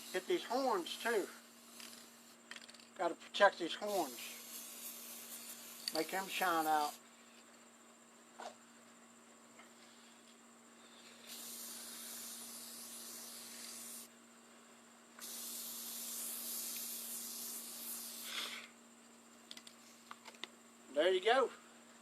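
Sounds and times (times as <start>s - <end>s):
aerosol can spraying hiss: 0.0s - 2.4s, 3.8s - 7.0s, 11.0s - 14.1s, 15.2s - 18.8s.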